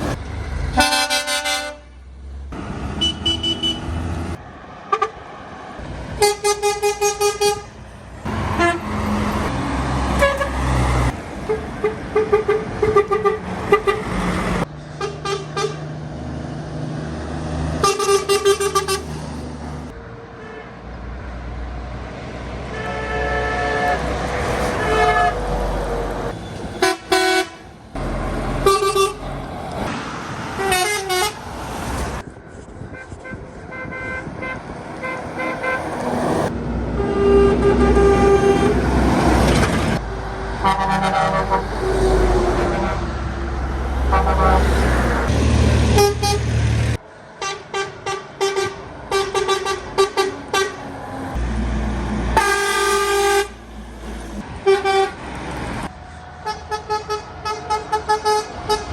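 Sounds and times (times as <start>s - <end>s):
truck engines rumbling: 0.0s - 58.9s
truck horn blasts: 0.7s - 2.0s, 3.0s - 4.0s, 6.2s - 7.8s, 8.5s - 9.2s, 10.1s - 14.2s, 15.0s - 15.9s, 17.8s - 19.2s, 22.7s - 25.7s, 26.8s - 27.7s, 28.5s - 29.4s, 30.6s - 31.4s, 32.9s - 36.0s, 36.9s - 39.0s, 40.6s - 43.1s, 44.0s - 45.3s, 45.9s - 46.6s, 47.4s - 50.8s, 52.4s - 53.6s, 54.6s - 55.2s, 56.4s - 58.9s
truck horn short toots: 0.8s - 2.0s, 3.0s - 4.0s, 6.2s - 7.7s, 15.0s - 15.8s, 17.8s - 19.1s, 28.6s - 29.3s, 37.0s - 38.9s, 46.0s - 46.5s, 52.4s - 53.6s.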